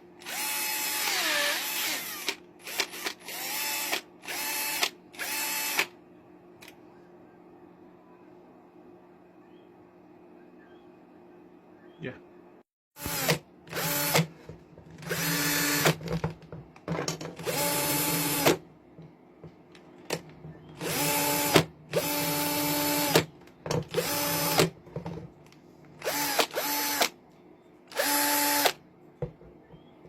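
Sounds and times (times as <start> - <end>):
cordless drill motor spinning: 0.2 - 5.9, 13.0 - 14.3, 15.0 - 16.0, 17.4 - 18.6, 20.8 - 23.2, 23.9 - 24.7, 26.0 - 27.1, 27.9 - 28.8.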